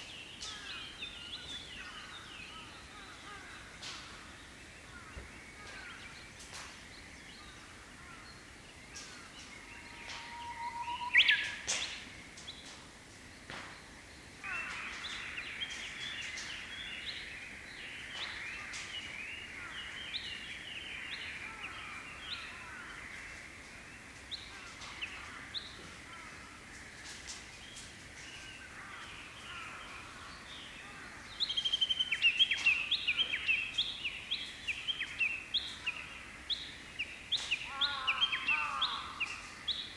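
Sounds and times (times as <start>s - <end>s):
small birds chirping: 0.0s - 39.9s
bush warbler singing: 8.7s - 12.7s.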